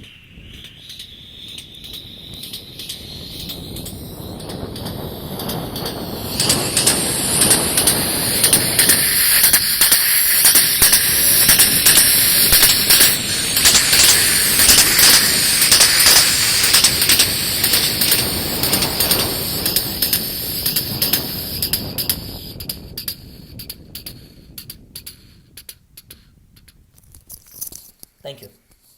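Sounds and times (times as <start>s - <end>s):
vocal mimicry of passing train: 2.8s - 22.6s.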